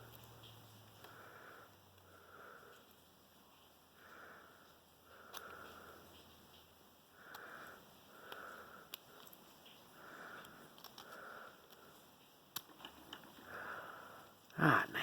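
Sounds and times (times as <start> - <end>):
soft nasal breathing: 0.8 - 12.4, 13.2 - 14.8
small metal parts clicking: 10.7 - 11.2, 12.5 - 13.4.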